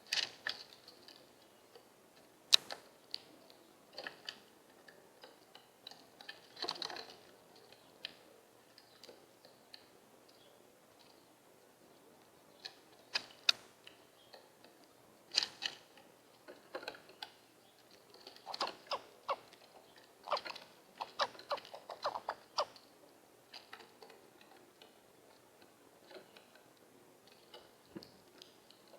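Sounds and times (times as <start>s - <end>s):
bird making sharp clicks: 18.4s - 19.5s, 20.3s - 22.8s.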